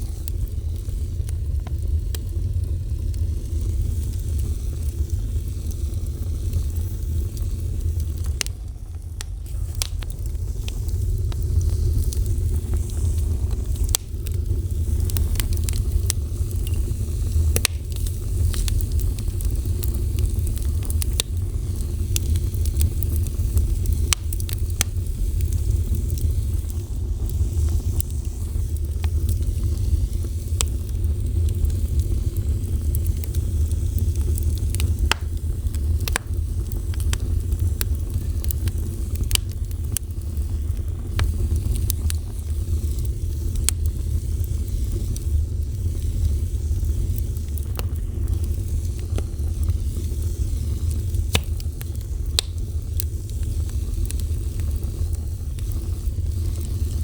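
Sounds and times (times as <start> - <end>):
fire crackling and popping: 0.0 - 57.0
low rumble of flames: 0.0 - 57.0.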